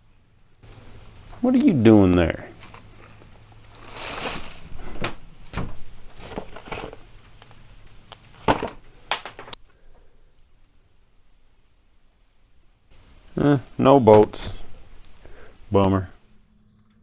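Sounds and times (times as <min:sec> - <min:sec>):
rummaging through hardware: 0:00.6 - 0:07.5.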